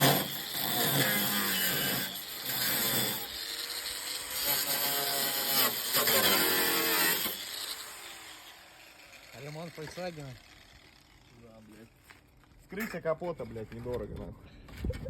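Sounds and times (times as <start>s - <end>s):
small power tool running: 0.0s - 11.5s.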